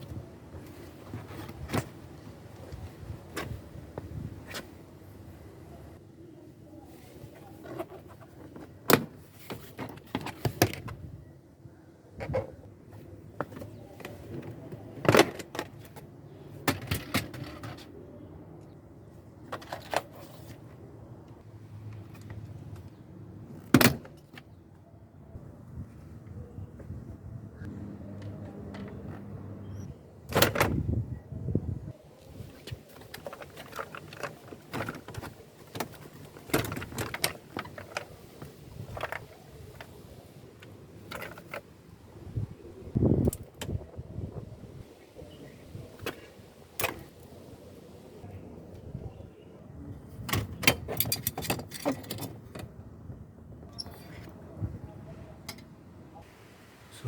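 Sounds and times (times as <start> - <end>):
tools and metal parts clinking: 50.3 - 52.7.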